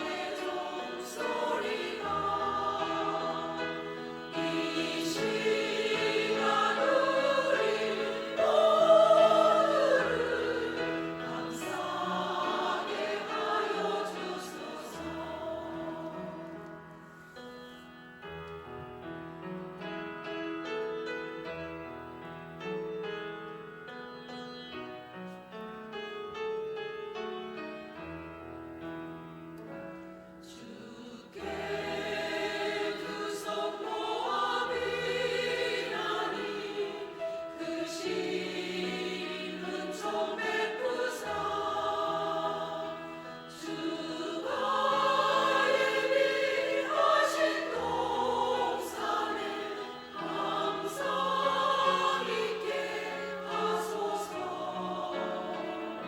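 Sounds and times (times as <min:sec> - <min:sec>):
choir singing a hymn: 0:00.0 - 0:23.7, 0:26.0 - 0:56.0
piano accompaniment: 0:00.0 - 0:56.0.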